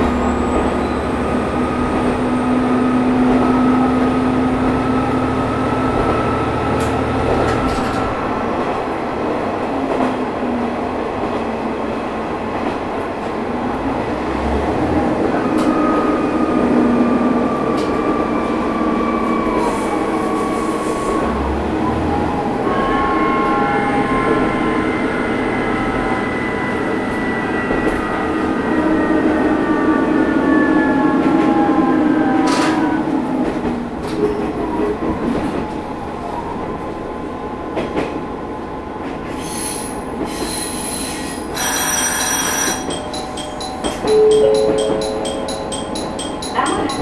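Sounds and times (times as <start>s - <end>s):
diesel railcar running: 0.0s - 47.0s
rail and wheel noise: 0.0s - 47.0s
high falling tones: 42.7s - 47.0s.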